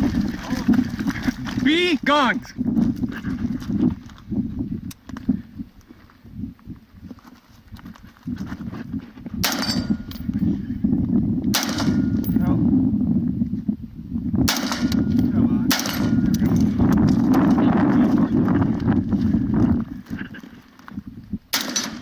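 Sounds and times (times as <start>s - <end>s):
gunshots: 11.6s - 12.2s, 14.5s - 15.0s, 15.7s - 16.2s, 21.5s - 22.0s.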